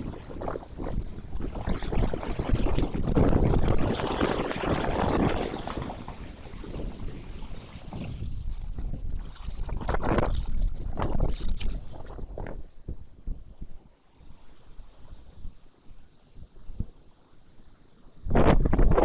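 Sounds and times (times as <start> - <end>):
wind buffeting microphone: 0.0 - 13.9, 18.2 - 19.0.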